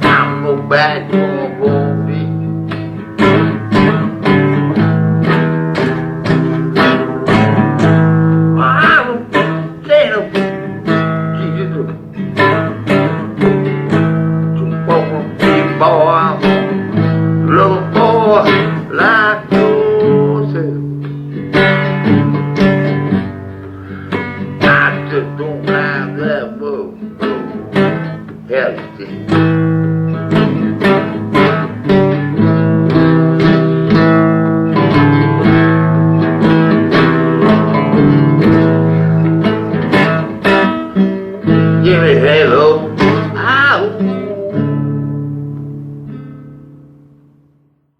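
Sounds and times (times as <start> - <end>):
acoustic guitar strumming chords: 0.0 - 47.9.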